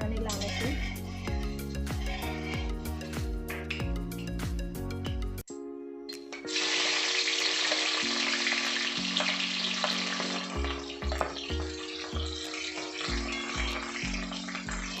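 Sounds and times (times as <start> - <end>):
hot oil sizzling in a pan: 0.0 - 3.0, 6.4 - 15.0
background music with held notes: 0.0 - 15.0.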